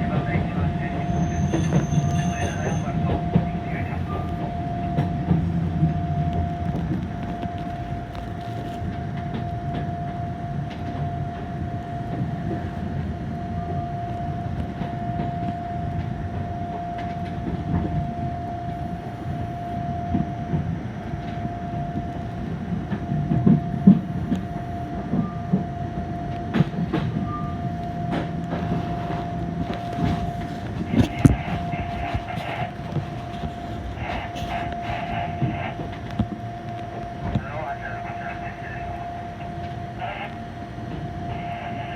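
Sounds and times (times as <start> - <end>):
tram rumbling on rails: 0.0 - 41.9
tram whine: 0.0 - 41.9.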